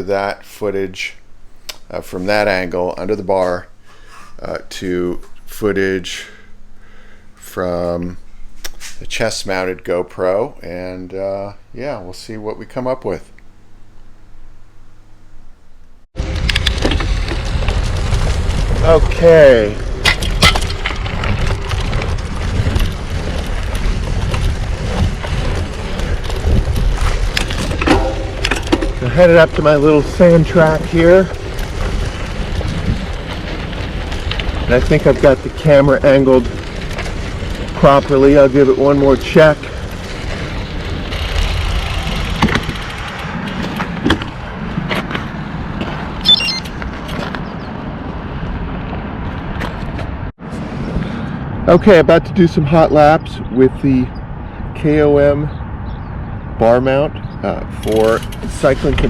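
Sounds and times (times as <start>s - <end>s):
bicycle tyres rolling on dirt: 0.0s - 14.2s, 16.2s - 59.0s
wind buffeting microphone: 16.2s - 59.0s
sharp clicks and knocks: 42.3s - 45.2s, 57.8s - 59.0s
brief high squeak: 46.2s - 46.8s.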